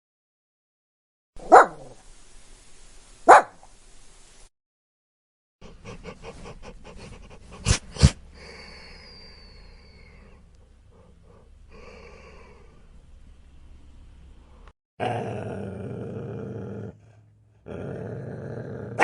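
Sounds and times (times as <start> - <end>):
dog barking: 1.4 - 2.0, 3.2 - 3.6
dog sniffing: 5.6 - 8.2.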